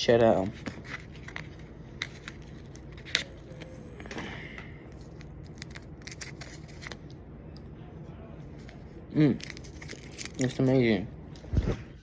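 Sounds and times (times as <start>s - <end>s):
gum being handled and chewed: 4.8s - 7.7s, 8.6s - 11.8s.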